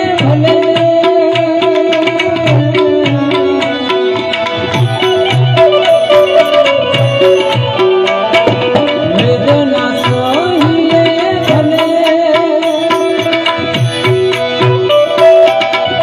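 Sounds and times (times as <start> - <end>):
harmonium tones: 0.0 - 16.0
tabla rhythm: 0.0 - 16.0
sliding melody line: 3.2 - 16.0.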